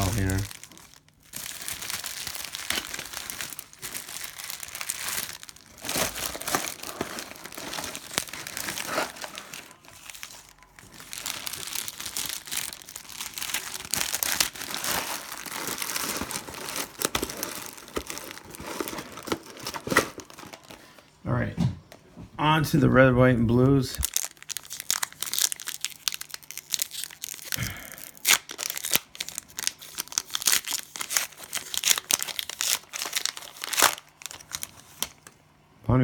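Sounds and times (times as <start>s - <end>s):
wrappers crumpled and crinkled: 0.0s - 21.0s, 23.9s - 35.3s.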